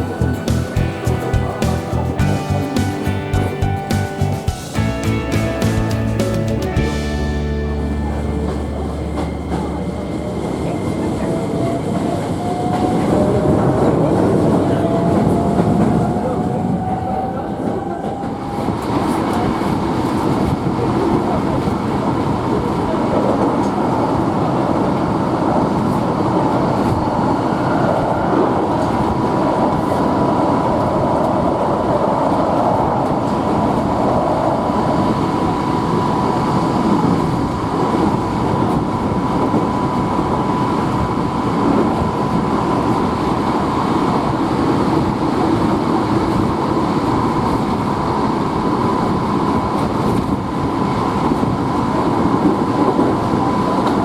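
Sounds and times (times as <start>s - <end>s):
train high whine: 0.0s - 54.0s
wheels rumbling on rails: 0.0s - 54.0s.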